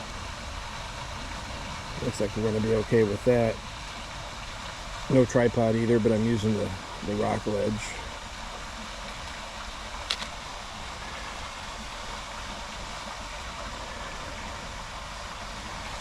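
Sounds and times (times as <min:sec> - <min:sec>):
waterfall rushing: 0:00.0 - 0:16.0
sharp click: 0:10.1 - 0:10.3.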